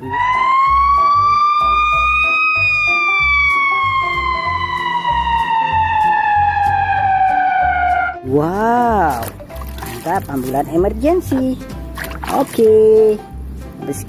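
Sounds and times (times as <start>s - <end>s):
ambulance siren wailing: 0.0s - 8.2s.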